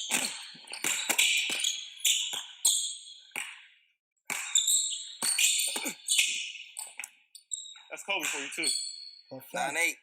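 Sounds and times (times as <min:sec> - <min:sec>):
basketball bouncing: 0:00.0 - 0:02.5
sneakers squeaking: 0:00.0 - 0:03.7, 0:04.3 - 0:09.3.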